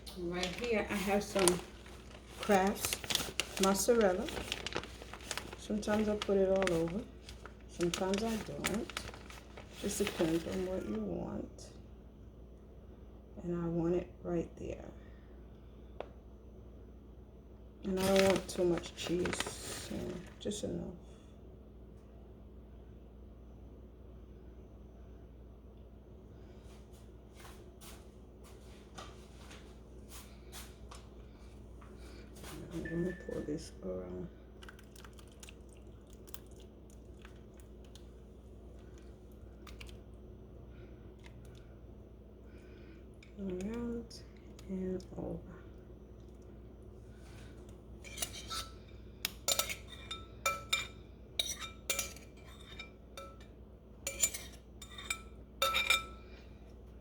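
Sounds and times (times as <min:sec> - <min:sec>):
clicks and rustles of handling food: 0:00.0 - 0:11.0, 0:17.9 - 0:20.4, 0:34.6 - 0:40.3, 0:41.0 - 0:41.8, 0:46.1 - 0:53.5
low steady hum: 0:00.0 - 0:57.0
metal utensil clinking on frying pan: 0:54.1 - 0:56.1.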